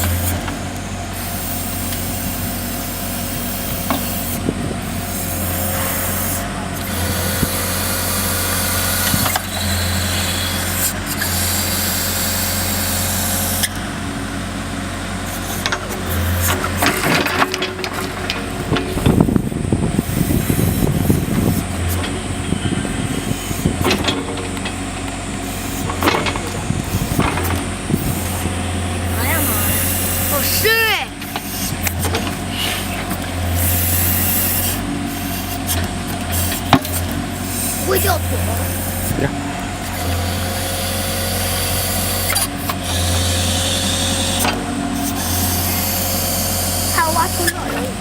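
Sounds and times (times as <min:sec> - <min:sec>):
loader engine running: 0:00.0 - 0:48.0
metal knocks and clanks: 0:25.8 - 0:28.1.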